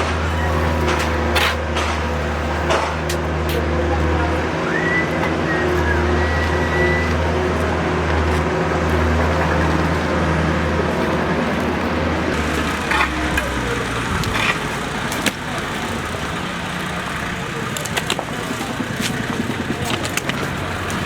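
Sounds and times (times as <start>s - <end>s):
heavy machinery engine humming: 0.0s - 21.0s.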